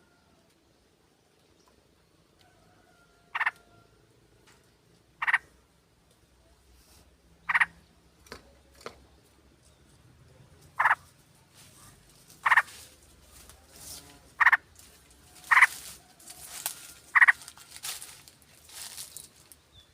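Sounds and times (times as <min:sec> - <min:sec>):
faint bird chatter: 0:04.5 - 0:05.6, 0:07.4 - 0:19.9.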